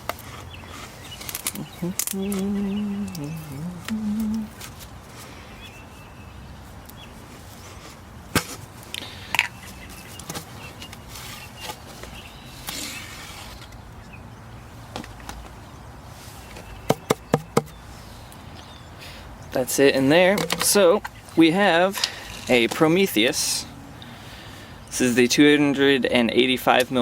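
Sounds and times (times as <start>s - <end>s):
knocks: 16.9s - 17.8s.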